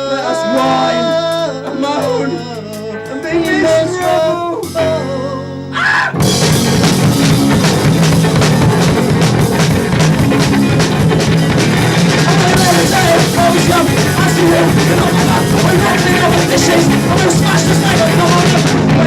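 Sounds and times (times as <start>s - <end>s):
live rock band playing: 0.0s - 19.0s
steady bass line: 0.0s - 19.0s
drum strikes: 6.2s - 19.0s.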